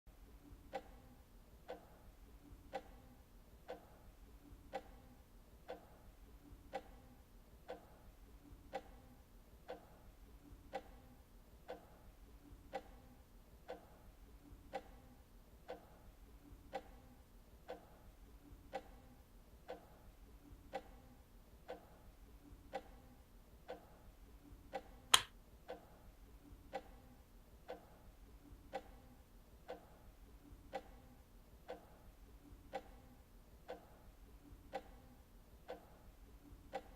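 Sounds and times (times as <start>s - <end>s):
clock ticking: 0.2s - 36.9s
loud sharp click: 25.1s - 25.3s.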